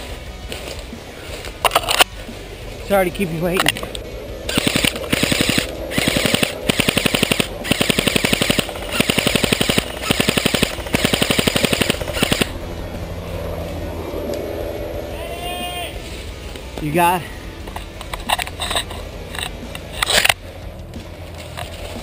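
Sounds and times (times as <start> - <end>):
airsoft rifle bursts: 4.5 - 12.5.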